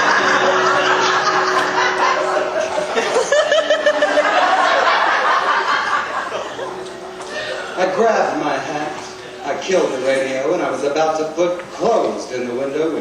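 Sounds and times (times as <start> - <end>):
audience laughing: 0.0 - 10.0.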